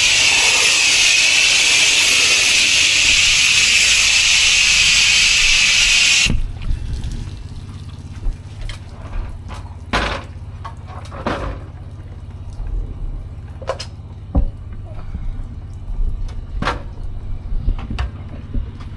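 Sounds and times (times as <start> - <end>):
pressure washer spray hissing: 0.0 - 6.6
engine humming: 0.0 - 18.9.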